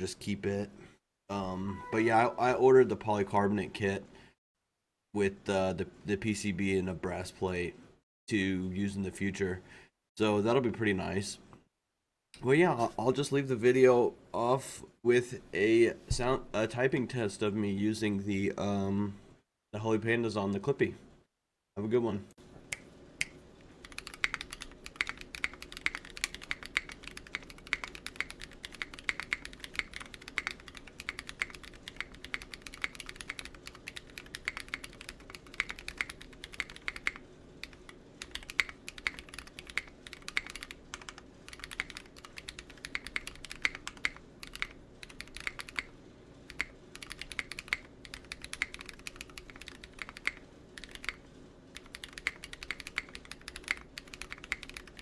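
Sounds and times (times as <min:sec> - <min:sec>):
mechanical keyboard typing: 0:23.8 - 0:45.9, 0:46.5 - 0:55.0.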